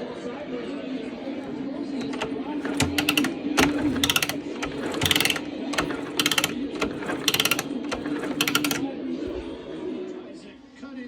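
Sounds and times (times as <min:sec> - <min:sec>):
ratchet wrench clicking: 0:02.0 - 0:08.8.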